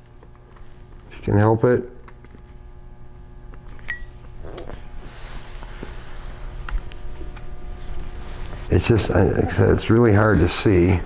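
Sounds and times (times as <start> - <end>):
faint steady hum: 0.0 - 11.0
soft scraping rub: 7.7 - 10.7.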